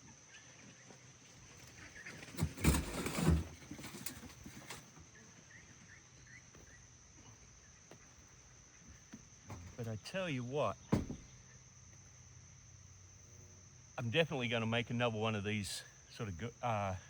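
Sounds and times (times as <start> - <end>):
crickets chirping: 0.0 - 17.0
rustling: 1.5 - 5.0
thumps: 2.2 - 4.8, 10.9 - 11.3
faint bird chirps: 5.0 - 9.2.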